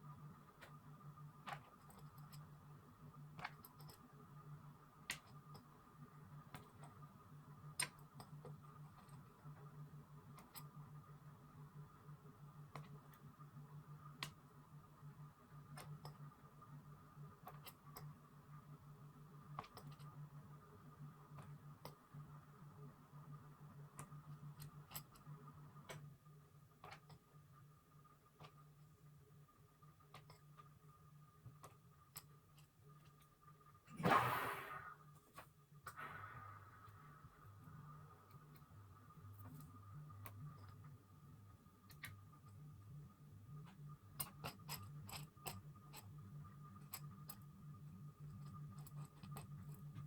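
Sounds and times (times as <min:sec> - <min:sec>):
low steady hum: 0:00.0 - 0:50.0
faint sharp clicks and taps: 0:23.9 - 0:27.3, 0:30.0 - 0:30.8, 0:31.4 - 0:33.4.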